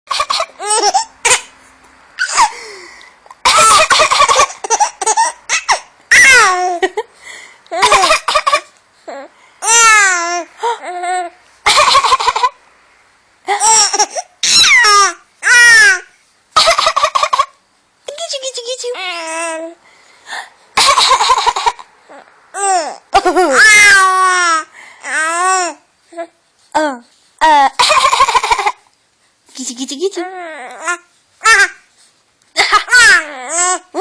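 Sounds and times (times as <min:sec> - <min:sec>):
baby laughing: 0:00.1 - 0:01.5, 0:02.2 - 0:02.7, 0:03.3 - 0:07.1, 0:07.7 - 0:08.8, 0:09.6 - 0:12.6, 0:13.5 - 0:16.0, 0:16.6 - 0:17.6, 0:20.8 - 0:25.7, 0:27.7 - 0:28.9, 0:32.6 - 0:34.0.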